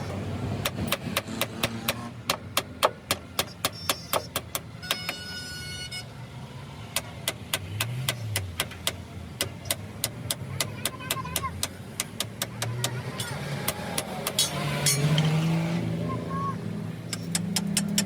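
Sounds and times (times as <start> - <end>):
sharp evenly spaced taps: 0.6 - 5.2, 6.9 - 15.3, 17.0 - 18.0.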